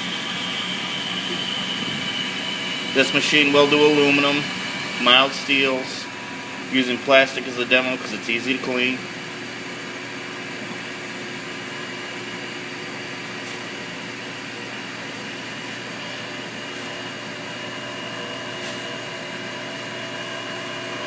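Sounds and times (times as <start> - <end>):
mill spindle motor whining: 0.0 - 21.0.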